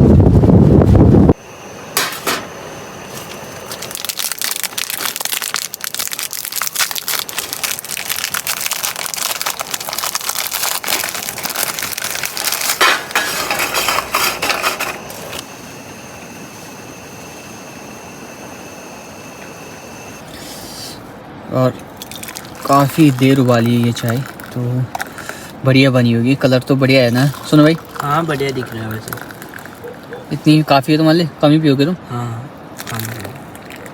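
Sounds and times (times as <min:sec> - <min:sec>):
dense irregular crackling: 0:03.8 - 0:15.4.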